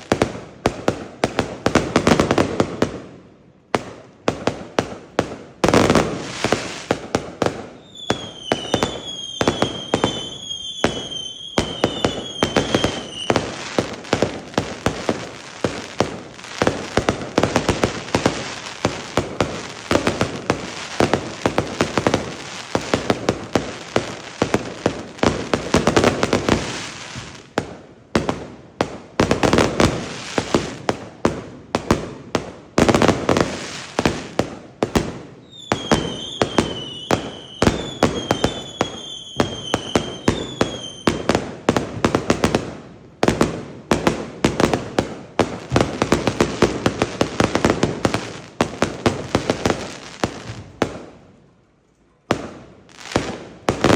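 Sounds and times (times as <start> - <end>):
fireworks bangs and crackles: 0.0 - 51.6, 52.2 - 53.9
shrill firework whistles: 7.8 - 13.7, 35.4 - 41.3.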